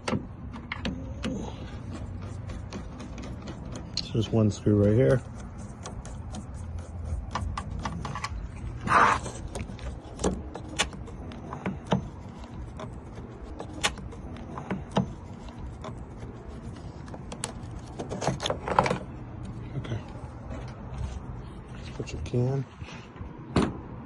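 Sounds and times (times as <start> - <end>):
short rasp: 1.3 - 8.0, 8.7 - 10.8.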